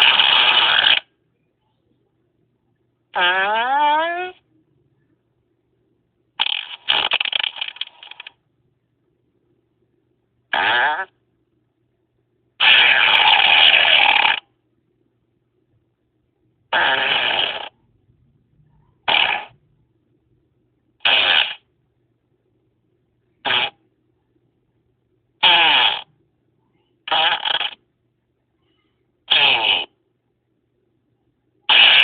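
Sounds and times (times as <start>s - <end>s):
farts: 0.0s - 1.1s, 3.1s - 4.4s, 6.4s - 8.4s, 10.5s - 11.2s, 12.6s - 14.5s, 16.7s - 17.8s, 19.0s - 19.6s, 21.0s - 21.7s, 23.4s - 23.8s, 25.4s - 26.1s, 27.0s - 27.8s, 29.3s - 30.0s, 31.7s - 32.0s.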